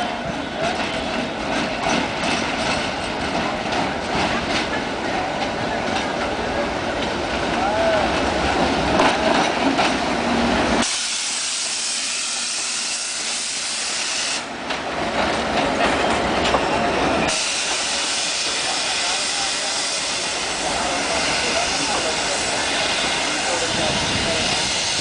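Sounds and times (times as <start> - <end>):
train rumbling: 0.0 - 25.0
train air hiss: 10.7 - 14.5, 17.3 - 25.0.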